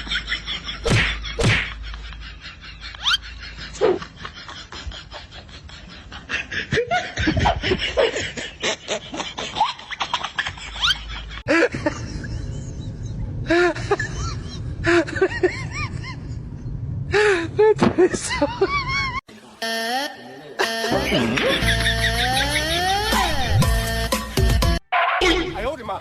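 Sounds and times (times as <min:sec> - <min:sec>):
person laughing: 0:00.0 - 0:16.2, 0:20.6 - 0:23.7.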